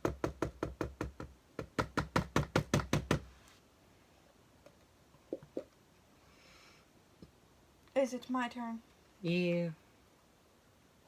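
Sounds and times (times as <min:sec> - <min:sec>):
rapid hard knocks: 0:00.0 - 0:03.3.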